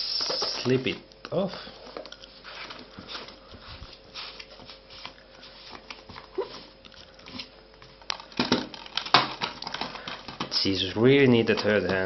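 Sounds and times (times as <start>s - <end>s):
plastic case rustling and clicking: 7.3s - 10.6s, 11.4s - 12.0s.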